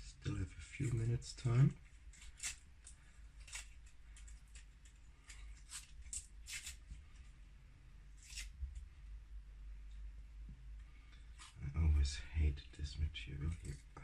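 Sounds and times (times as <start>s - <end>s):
low steady hum: 0.0s - 14.0s
hands rustling small parts: 1.8s - 7.0s.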